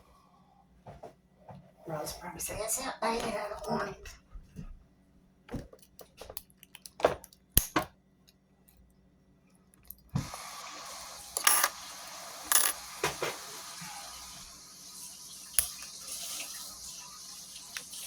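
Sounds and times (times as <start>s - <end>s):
metallic clicks of lock picking: 5.8s - 7.8s
running water hiss: 10.2s - 18.0s.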